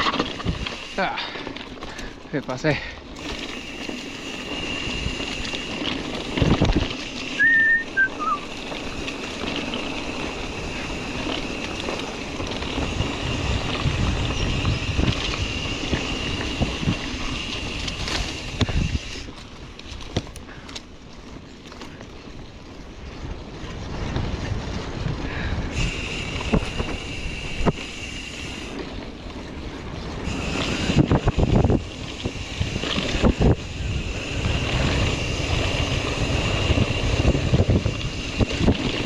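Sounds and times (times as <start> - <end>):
steady high whine: 3.2 - 19.3, 25.8 - 29.0
wind on microphone: 10.1 - 19.3, 23.1 - 28.0, 29.8 - 39.0.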